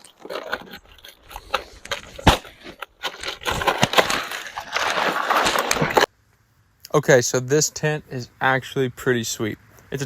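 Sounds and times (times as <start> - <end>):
camping gear rustling and clattering: 0.0 - 6.1.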